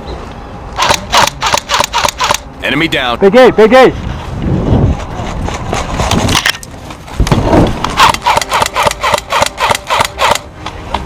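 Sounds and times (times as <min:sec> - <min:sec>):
airsoft gun rapid shots: 0:00.8 - 0:02.4, 0:08.0 - 0:10.5
scattered clicks: 0:00.8 - 0:02.4, 0:07.8 - 0:11.0.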